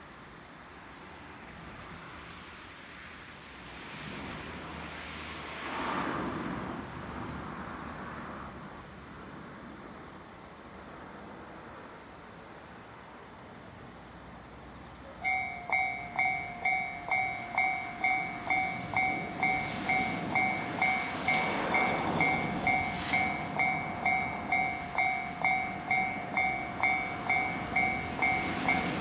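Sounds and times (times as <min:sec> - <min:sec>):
outdoor background noise: 0:00.0 - 0:29.0
road vehicle passing: 0:15.1 - 0:29.0.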